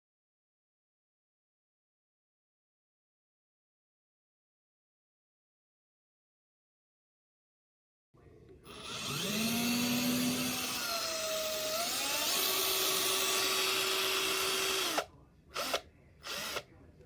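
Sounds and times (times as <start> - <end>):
cordless drill motor whining: 8.7 - 16.7.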